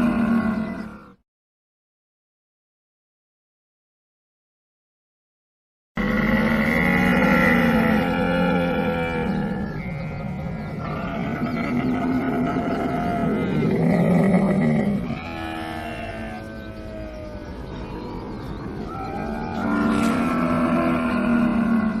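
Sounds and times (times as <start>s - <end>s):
camel calling: 0.0s - 1.2s, 6.0s - 22.0s.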